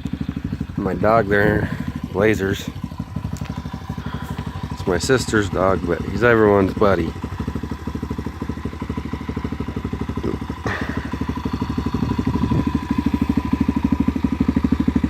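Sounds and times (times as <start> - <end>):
dirt bike engine idling: 0.0 - 15.0.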